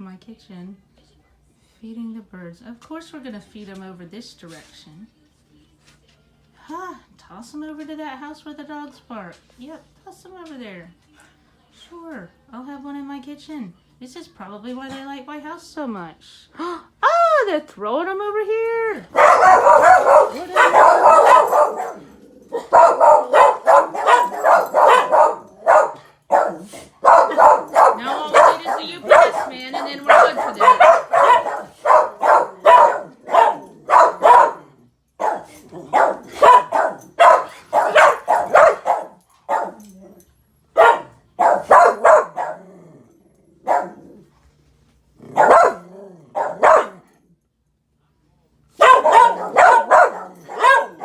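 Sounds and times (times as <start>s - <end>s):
dogs barking: 19.0s - 44.3s, 45.2s - 47.2s, 48.7s - 51.0s
dog bark-yowl: 19.2s - 34.6s, 35.2s - 39.9s, 40.8s - 42.7s, 43.6s - 44.1s, 45.3s - 47.0s, 48.8s - 51.0s.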